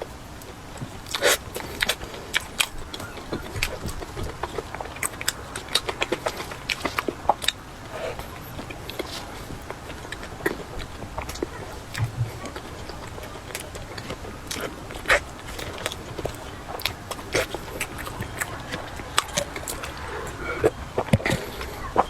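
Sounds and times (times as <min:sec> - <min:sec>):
utensil noises: 0:00.0 - 0:22.0
person biting and chewing food: 0:00.4 - 0:21.7.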